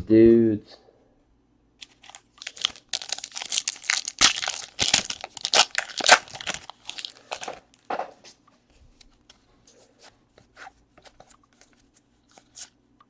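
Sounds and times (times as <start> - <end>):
plastic wrapper tearing and crinkling: 1.8 - 7.6.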